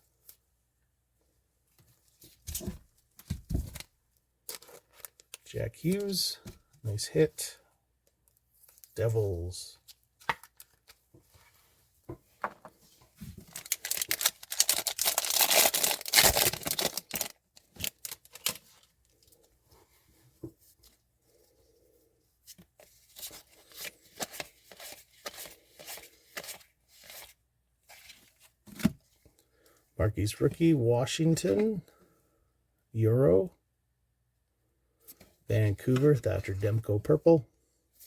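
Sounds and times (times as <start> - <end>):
wrapper tearing: 13.5 - 18.6.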